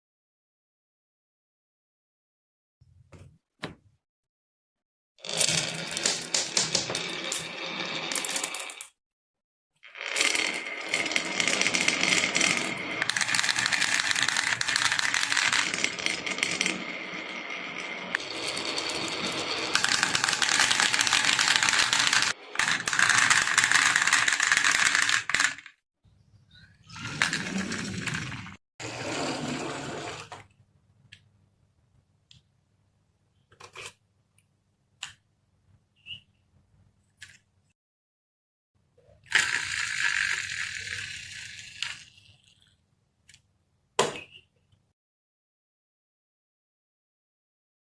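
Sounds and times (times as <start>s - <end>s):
marbles clattering down wooden run: 5.3s - 8.9s, 10.1s - 25.6s, 39.3s - 42.1s.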